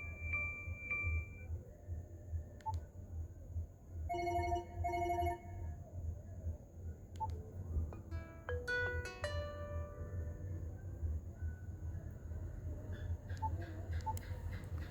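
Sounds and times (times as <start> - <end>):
high beeping ringtone: 0.0 - 1.5, 4.1 - 5.6.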